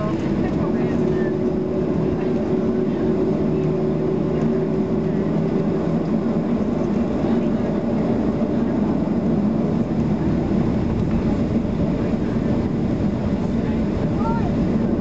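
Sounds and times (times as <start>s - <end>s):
airplane cabin engine drone: 0.0s - 15.0s.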